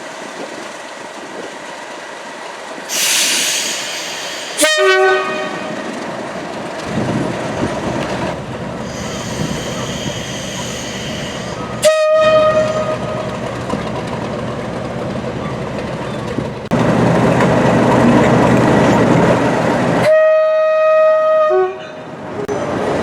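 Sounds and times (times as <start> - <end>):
train passing with wheel clatter: 0.0 - 23.0
train horn blasts: 2.9 - 5.9, 10.9 - 13.4, 20.0 - 22.1.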